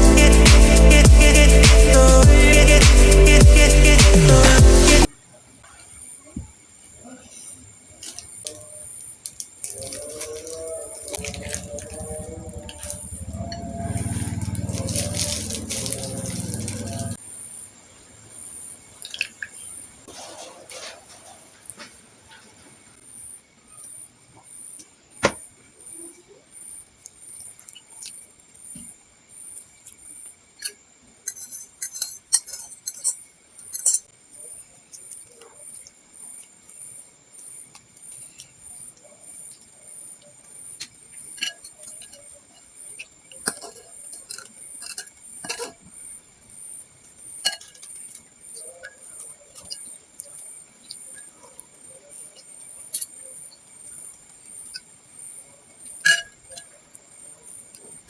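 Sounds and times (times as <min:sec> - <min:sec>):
eating noises: 0:09.3 - 0:17.2, 0:27.1 - 0:28.4
spoon clinking against bowl: 0:30.6 - 0:34.0, 0:56.0 - 0:56.7.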